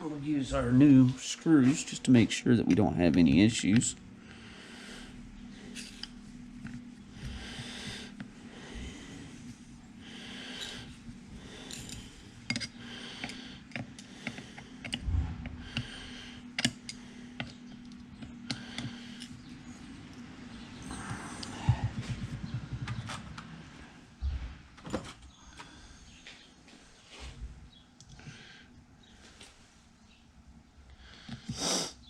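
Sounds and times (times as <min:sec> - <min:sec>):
steady low hum: 0:00.0 - 0:32.0
screwdriver clicking and scraping: 0:11.7 - 0:15.1
thud: 0:15.0 - 0:15.7.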